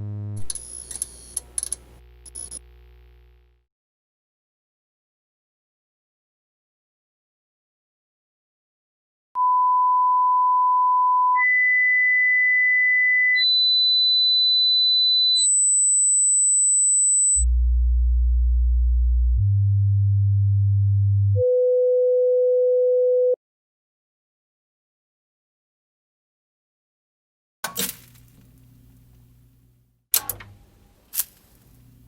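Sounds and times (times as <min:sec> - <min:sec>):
electronic sine-wave test tones: 0:02.0 - 0:03.6, 0:09.4 - 0:23.4.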